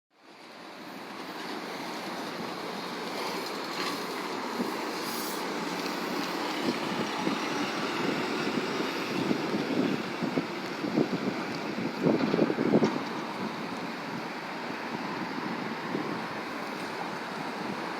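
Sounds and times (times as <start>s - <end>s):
vehicle noise rushing: 1.6s - 17.9s
wind buffeting microphone: 4.2s - 17.9s.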